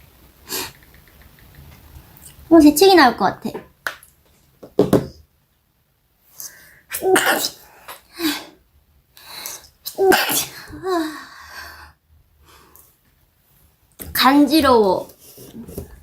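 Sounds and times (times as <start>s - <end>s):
person sneezing: 6.9s - 8.6s, 9.9s - 11.1s.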